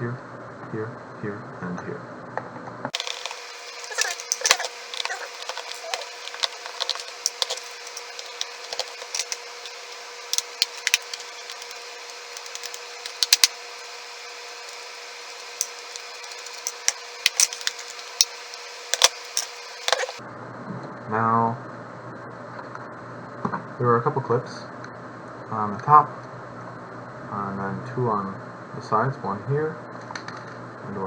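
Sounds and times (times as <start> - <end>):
screwdriver clicking on screws: 3.0 - 20.2.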